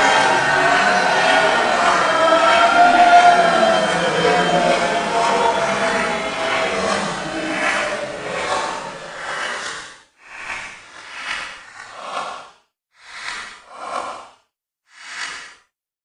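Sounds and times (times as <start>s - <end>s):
crowd cheering and applause: 0.0s - 9.7s.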